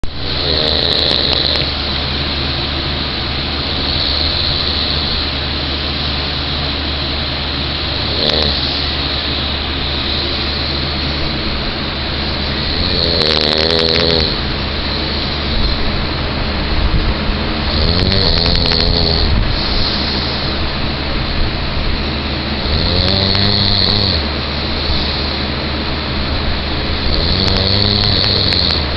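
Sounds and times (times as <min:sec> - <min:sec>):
person imitating snoring: 0:00.3 - 0:01.7, 0:08.0 - 0:08.7, 0:12.6 - 0:14.4, 0:17.7 - 0:20.0, 0:22.6 - 0:24.2, 0:27.0 - 0:28.8
steady rushing noise: 0:01.3 - 0:28.9.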